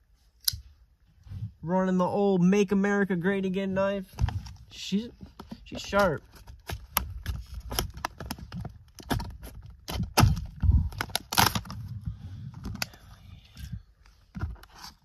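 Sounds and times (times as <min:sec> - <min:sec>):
plastic crackling and crinkling: 0:04.1 - 0:15.0
knife cutting plastic packaging: 0:06.2 - 0:11.8.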